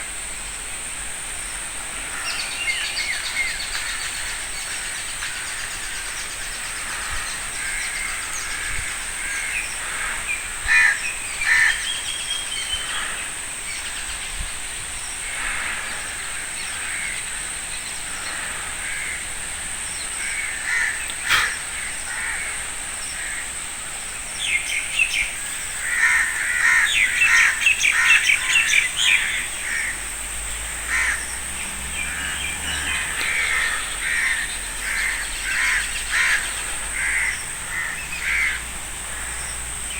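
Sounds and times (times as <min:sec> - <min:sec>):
crows cawing: 0:06.8 - 0:11.8, 0:18.1 - 0:19.4, 0:20.2 - 0:23.5, 0:25.8 - 0:30.1, 0:30.8 - 0:31.4, 0:32.0 - 0:39.5
other bird calls: 0:20.1 - 0:22.5, 0:24.4 - 0:39.6.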